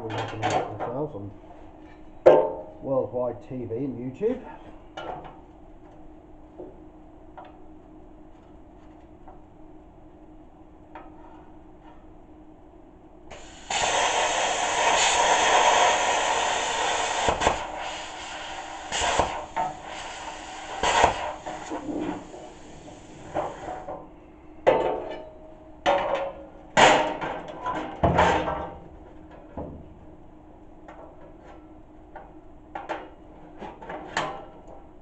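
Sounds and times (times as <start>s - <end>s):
plasma cutter hissing: 13.3s - 23.8s
plasma torch short bursts: 13.3s - 23.8s.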